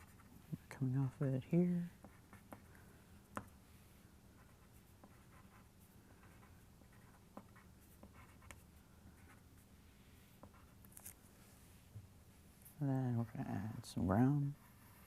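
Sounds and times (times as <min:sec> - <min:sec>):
drawing tool scratching on paper: 0:06.3 - 0:08.6.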